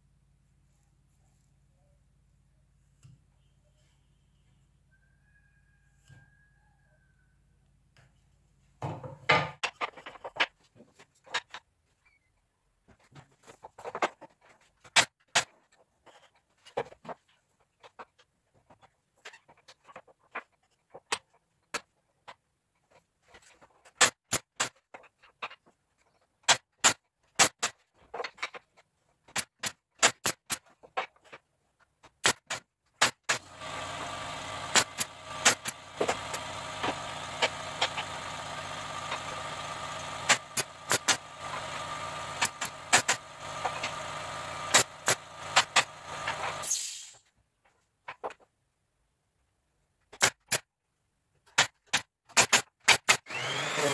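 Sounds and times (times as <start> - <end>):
wood and tools knocking: 8.8 - 11.7, 27.4 - 46.6
small electric motor humming: 33.4 - 46.7, 53.3 - 53.9.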